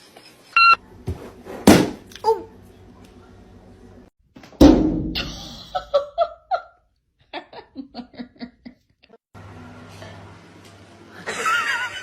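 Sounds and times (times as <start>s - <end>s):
heavy thump: 1.1s - 2.0s.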